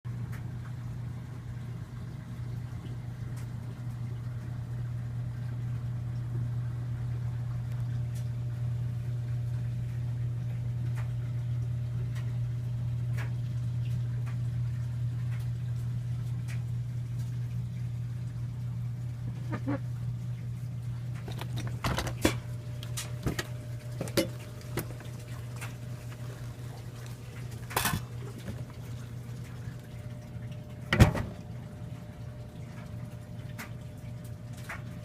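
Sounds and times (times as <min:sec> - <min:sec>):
low mechanical hum: 0:00.1 - 0:35.0.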